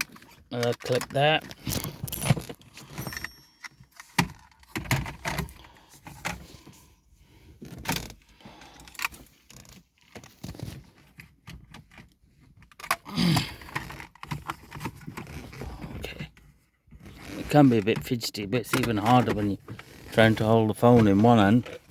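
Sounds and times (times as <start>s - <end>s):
plastic trim clicks and rattles: 0.0s - 6.4s, 17.7s - 20.1s.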